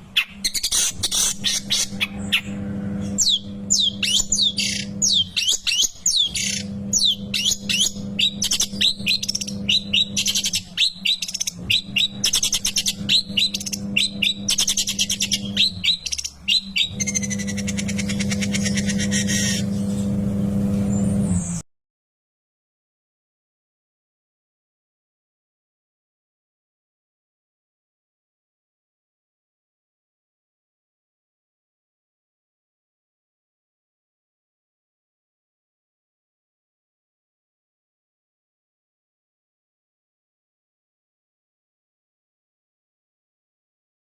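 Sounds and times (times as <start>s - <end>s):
steady low hum: 0.0s - 21.6s.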